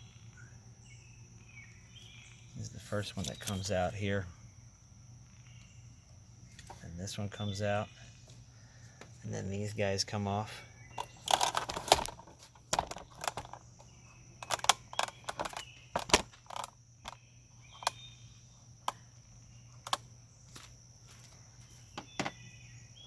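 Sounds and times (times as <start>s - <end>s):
metal tools clicking and clinking: 11.0s - 13.6s, 14.4s - 17.9s.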